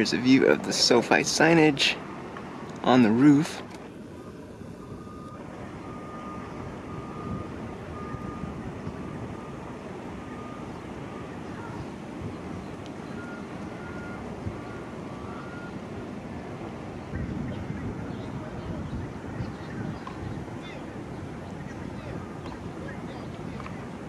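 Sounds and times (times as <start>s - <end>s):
vehicle and traffic noise: 0.0s - 24.0s
backup alarm beeping: 4.2s - 12.0s, 13.0s - 15.8s, 21.9s - 22.7s.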